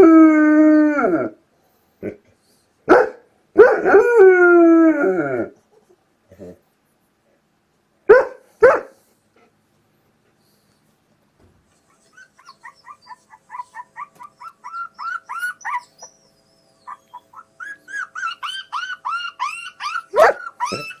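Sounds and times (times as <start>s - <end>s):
dog barking: 2.9s - 4.0s, 8.1s - 9.0s, 20.1s - 21.0s.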